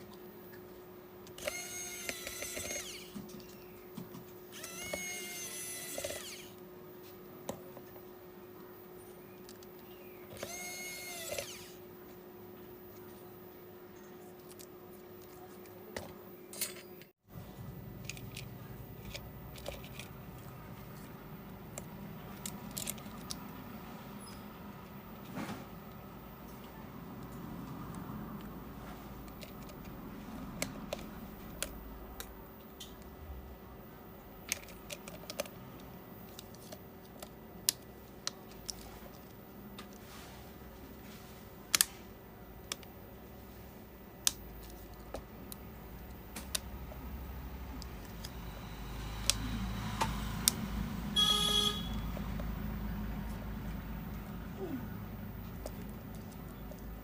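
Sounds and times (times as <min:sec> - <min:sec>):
power tool motor whining: 0:01.4 - 0:03.2, 0:04.5 - 0:06.6, 0:10.3 - 0:11.8
faint clicks and handling: 0:18.0 - 0:21.1, 0:34.4 - 0:40.1, 0:55.4 - 0:57.0.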